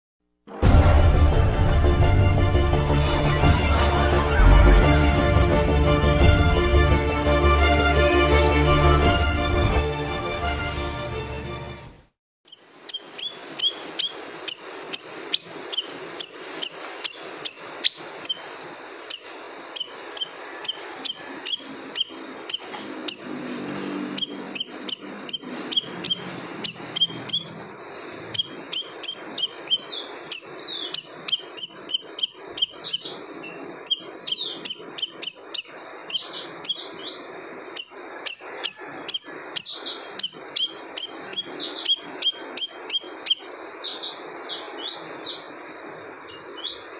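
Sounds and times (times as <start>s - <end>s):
bird chirping: 12.5s - 46.9s.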